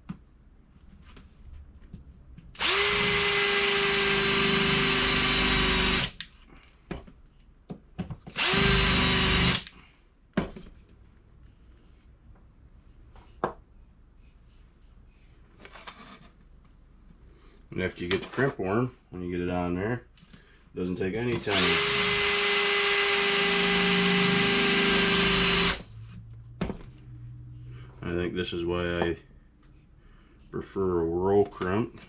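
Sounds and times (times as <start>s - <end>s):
electric drill spinning: 2.6s - 6.2s, 8.3s - 9.7s, 21.5s - 25.9s.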